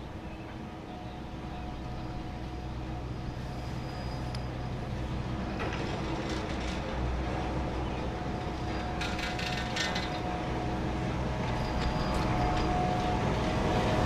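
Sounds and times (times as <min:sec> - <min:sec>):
ski lift mechanical hum: 0:00.0 - 0:14.0
cable and pulleys clattering: 0:05.5 - 0:07.3, 0:08.6 - 0:10.5, 0:11.4 - 0:13.2.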